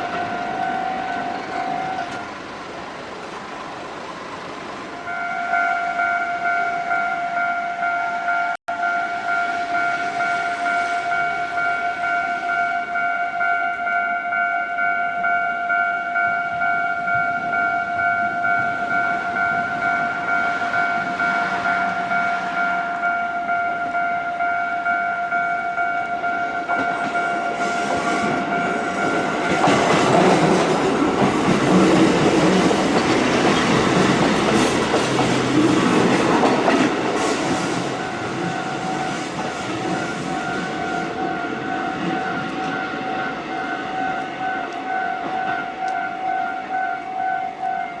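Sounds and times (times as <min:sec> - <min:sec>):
electric train rumble and clatter: 0:00.0 - 0:48.0
level crossing bell ringing: 0:05.1 - 0:29.9.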